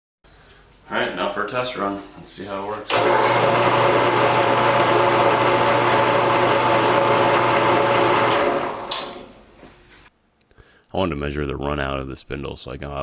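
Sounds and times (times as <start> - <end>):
drill press motor hum: 2.9 - 9.7.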